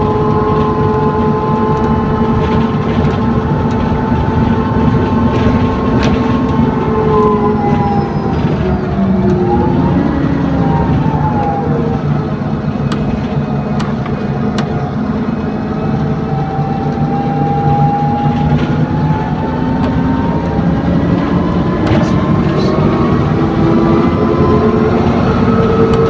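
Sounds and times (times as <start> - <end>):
bus engine drone: 0.0 - 26.0
gearbox whining tones: 0.0 - 26.0.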